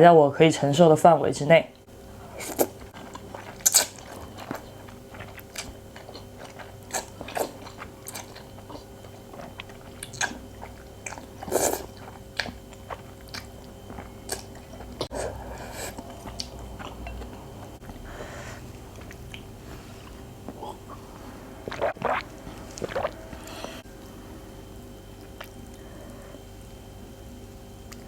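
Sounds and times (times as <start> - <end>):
chewing with wet smacks: 2.4 - 21.0.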